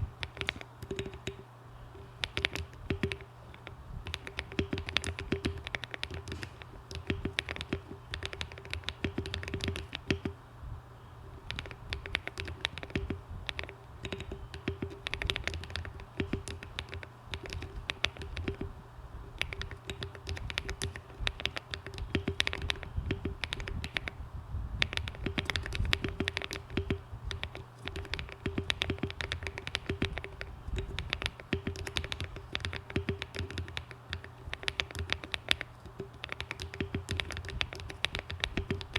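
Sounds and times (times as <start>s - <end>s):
fast typing on mechanical keyboard: 0.0s - 10.4s, 11.2s - 24.2s, 24.8s - 38.9s.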